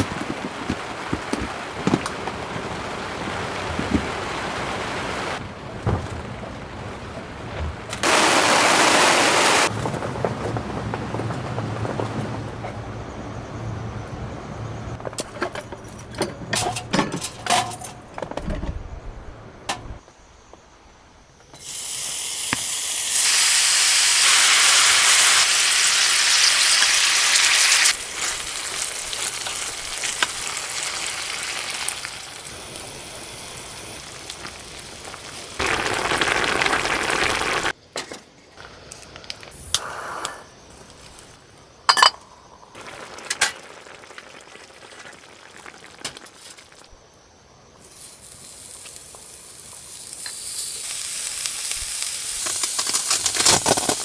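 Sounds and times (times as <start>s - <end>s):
food sizzling in a pan: 21.6s - 37.8s, 42.4s - 46.8s, 47.8s - 54.0s.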